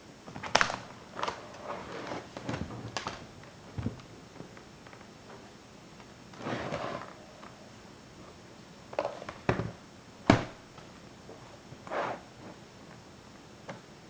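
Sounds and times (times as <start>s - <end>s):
tool scraping: 6.3s - 7.2s, 11.8s - 12.6s.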